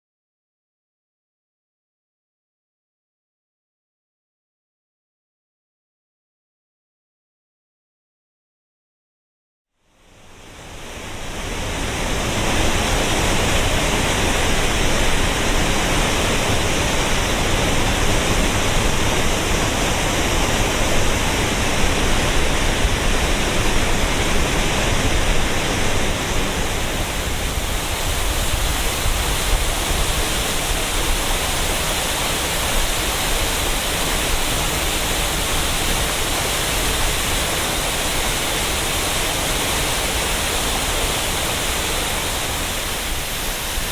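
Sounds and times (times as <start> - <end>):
waterfall pouring: 12.2 - 43.9.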